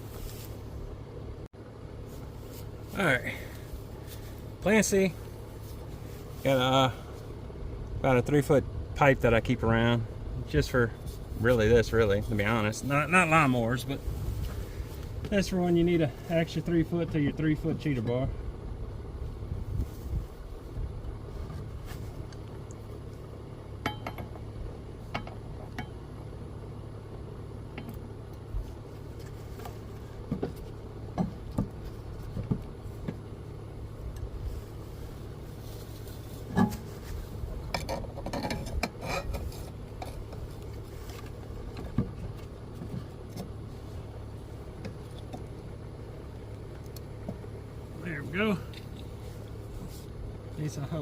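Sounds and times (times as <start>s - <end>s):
steady low hum: 0.0s - 51.0s
metal tools clinking and clanking: 37.7s - 40.2s.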